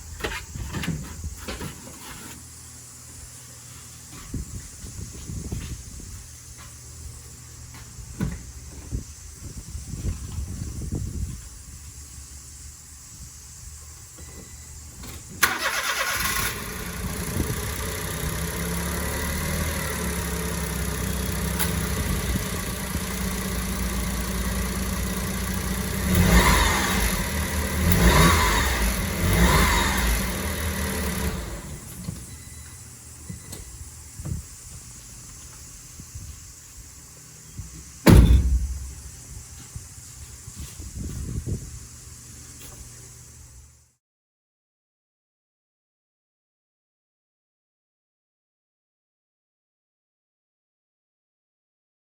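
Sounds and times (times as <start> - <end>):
car engine starting and idling: 15.2 - 32.3, 38.1 - 39.2.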